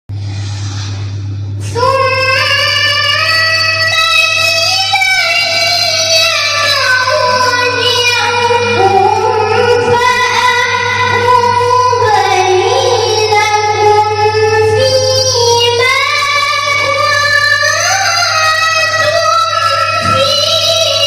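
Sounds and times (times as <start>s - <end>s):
steady low hum: 0.1s - 21.0s
woman reciting melodically: 1.6s - 21.0s.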